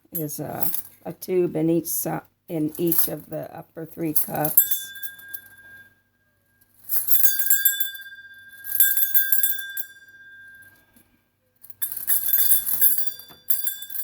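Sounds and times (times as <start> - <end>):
jangling clinks: 2.8 - 3.3, 6.8 - 8.0, 11.6 - 14.0
metal bells ringing: 4.1 - 6.0, 6.9 - 11.0, 11.6 - 14.0.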